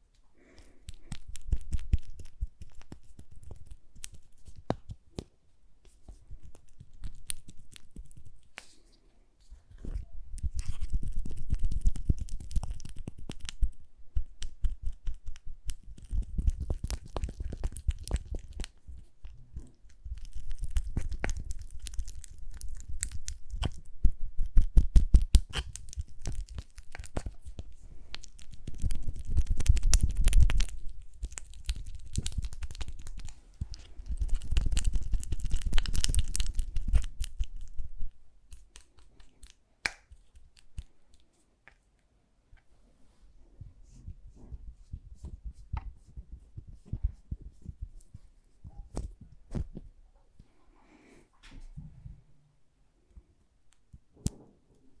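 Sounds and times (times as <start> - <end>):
sticky crackling and clicking: 0.1 - 5.3, 6.1 - 8.8, 9.7 - 41.3.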